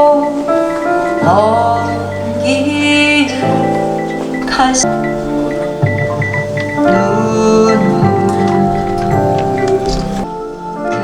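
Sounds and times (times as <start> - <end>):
slow song held notes: 0.0 - 11.0.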